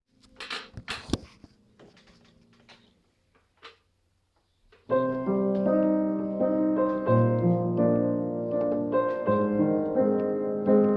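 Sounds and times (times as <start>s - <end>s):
soft clicks and knocks: 0.2s - 6.0s
piano playing chords and melody: 4.9s - 10.9s.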